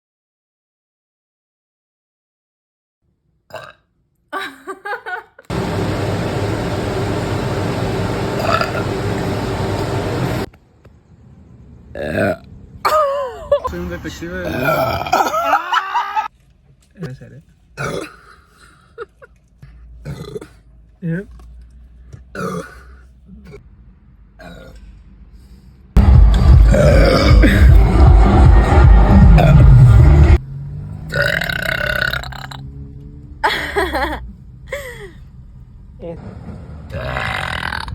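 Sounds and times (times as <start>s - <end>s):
person burping: 3.5s - 3.9s, 8.4s - 8.9s, 12.0s - 13.1s, 14.4s - 15.6s, 17.8s - 18.5s, 20.0s - 21.3s, 22.3s - 23.6s, 24.4s - 24.8s, 26.7s - 27.9s, 31.1s - 32.6s, 36.9s - 37.9s.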